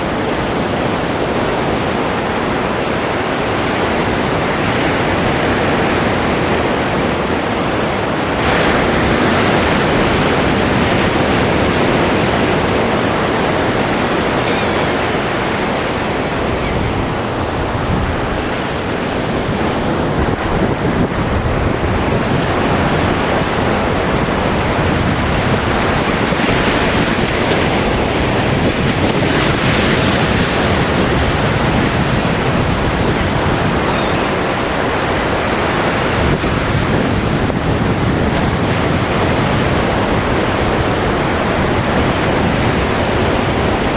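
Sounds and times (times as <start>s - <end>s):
ocean waves washing: 0.0s - 43.9s.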